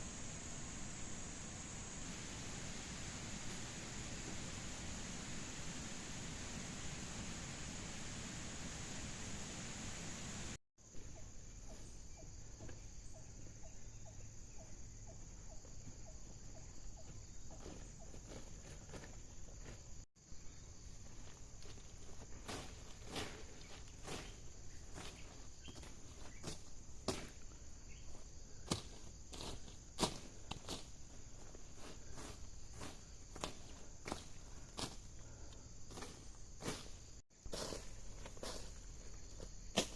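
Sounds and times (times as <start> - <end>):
footsteps outdoors: 15.2 - 39.9.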